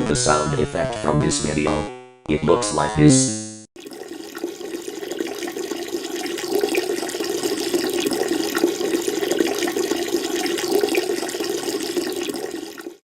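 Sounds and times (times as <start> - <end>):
urine splashing into toilet water: 3.8 - 13.0.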